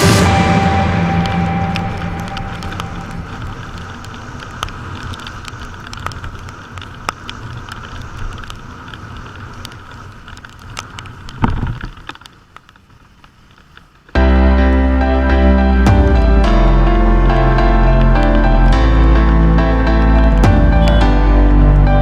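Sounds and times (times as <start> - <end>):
traffic and road noise in rain: 0.0 - 22.0
raindrops ticking close by: 1.0 - 14.9.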